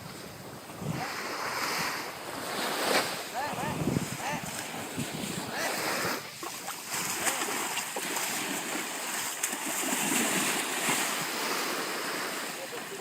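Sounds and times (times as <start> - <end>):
sea surf washing in: 0.0 - 13.0
water splashing: 2.6 - 13.0.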